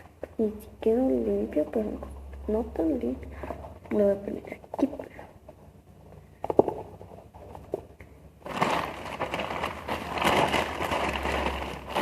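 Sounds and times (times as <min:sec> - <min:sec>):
plastic wrapping crinkling: 0:06.4 - 0:12.0.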